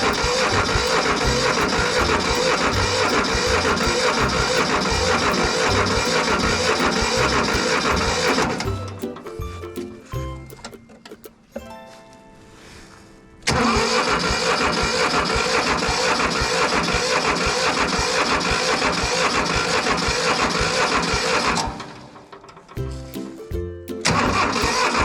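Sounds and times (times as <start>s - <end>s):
tractor diesel engine running: 0.0s - 10.6s, 13.5s - 25.0s.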